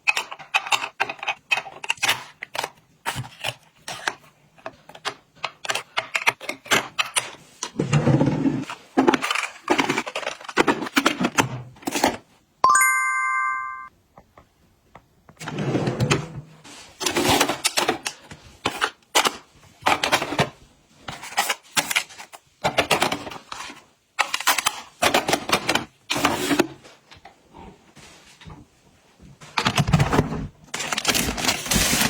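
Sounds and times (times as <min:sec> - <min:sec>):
packaging rustling and clattering: 0:08.6 - 0:12.2, 0:29.4 - 0:32.0
short ringing ding: 0:12.6 - 0:13.9.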